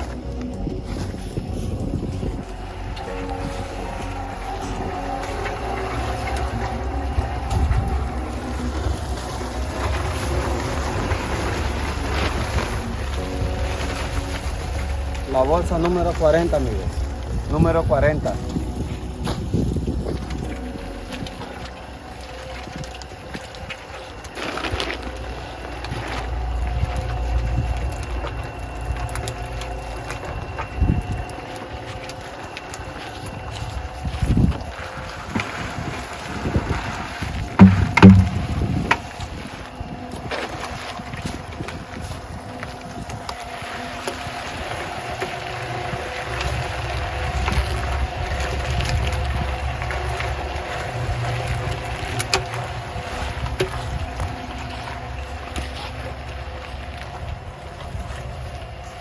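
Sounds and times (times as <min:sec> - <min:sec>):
concrete mixer rumbling: 0:00.0 - 0:59.0
knocks: 0:37.6 - 0:38.6.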